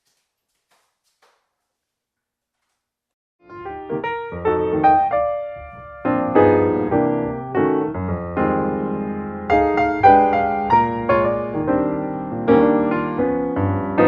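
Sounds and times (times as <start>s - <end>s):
slow piano chords: 3.4s - 14.0s.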